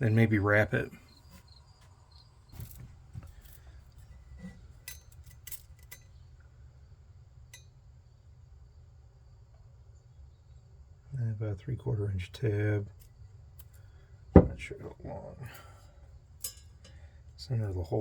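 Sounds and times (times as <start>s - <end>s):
small metal parts clinking: 2.6s - 6.2s, 12.9s - 13.9s, 16.4s - 17.0s.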